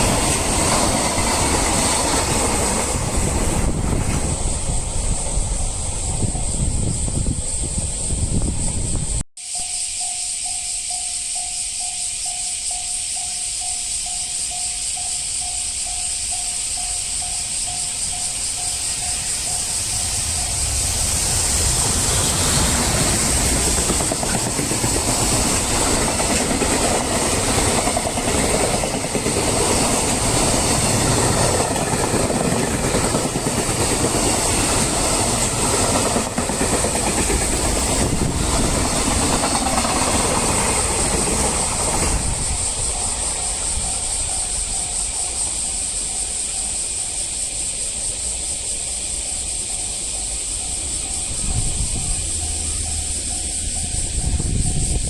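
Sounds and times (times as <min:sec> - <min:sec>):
train wheels rumbling on rails: 0:00.0 - 0:09.2, 0:10.0 - 0:55.0
steady high hiss: 0:00.0 - 0:55.0.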